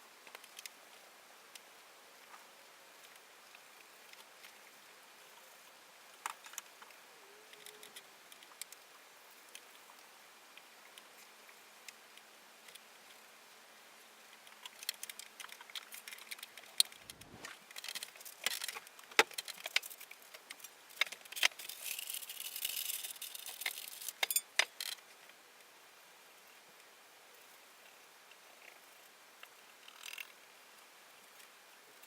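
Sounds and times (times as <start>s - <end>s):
small metal parts clinking: 21.4s - 25.0s.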